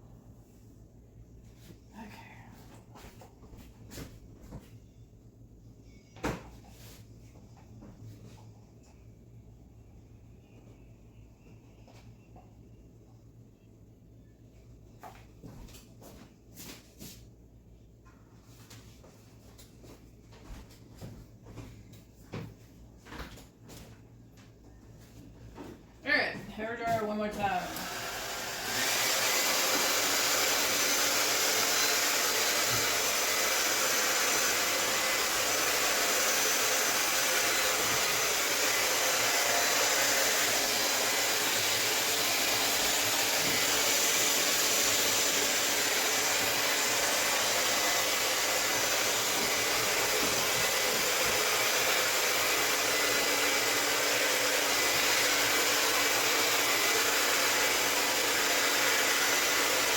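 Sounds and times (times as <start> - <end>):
hair dryer blowing: 26.6 - 59.9.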